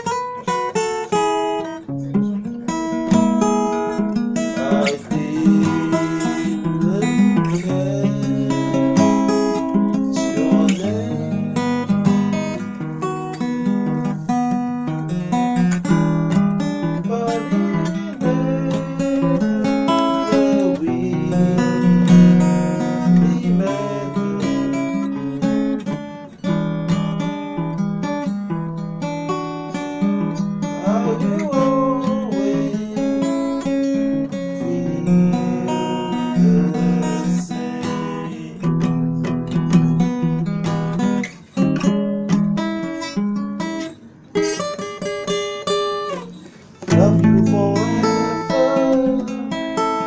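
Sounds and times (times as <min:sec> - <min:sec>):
acoustic guitar strummed and picked: 0:00.0 - 0:50.0.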